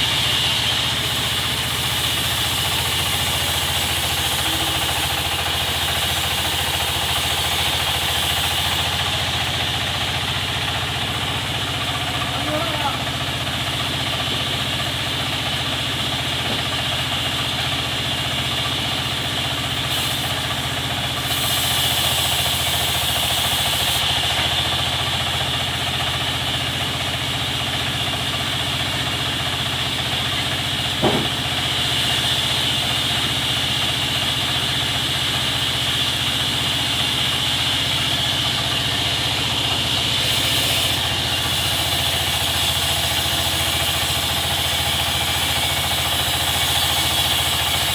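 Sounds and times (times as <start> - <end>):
machinery hum: 0.0 - 6.4
hiss: 0.0 - 9.6, 19.7 - 25.5, 31.0 - 47.9
sharp knock: 31.0 - 31.4.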